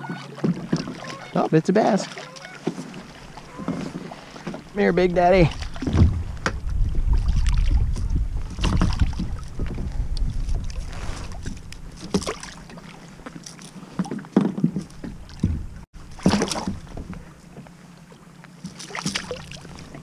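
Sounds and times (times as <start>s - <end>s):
water splashes: 0.0s - 20.0s
wind rumble on microphone: 4.6s - 12.2s.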